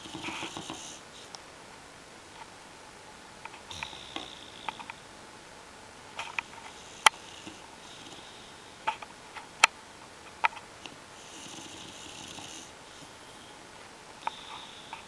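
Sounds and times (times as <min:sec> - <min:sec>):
dog snoring: 0:00.0 - 0:01.3, 0:03.7 - 0:05.0, 0:06.2 - 0:09.0, 0:11.2 - 0:13.6, 0:14.2 - 0:15.0
sharp clicking snaps: 0:03.4 - 0:05.0.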